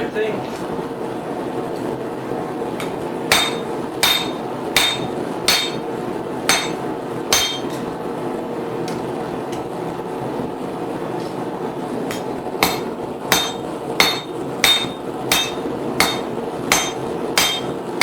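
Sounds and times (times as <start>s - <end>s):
hammer striking chisel: 2.8s - 5.9s, 6.5s - 7.8s, 12.1s - 17.8s.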